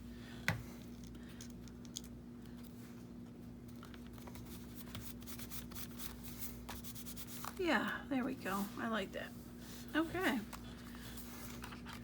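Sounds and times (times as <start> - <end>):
steady low hum: 0.0 - 12.0
paper rustling: 10.2 - 12.0.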